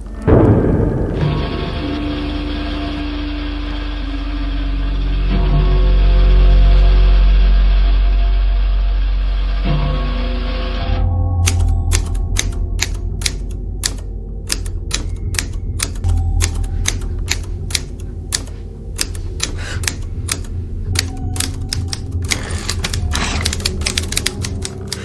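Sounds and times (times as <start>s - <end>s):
steady low hum: 0.0s - 25.0s
typewriter keys clacking: 11.4s - 25.0s.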